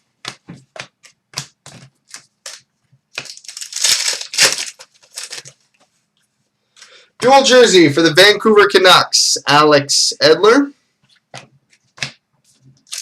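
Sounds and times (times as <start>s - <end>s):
card and packaging crackling: 1.7s - 5.6s, 12.8s - 13.0s.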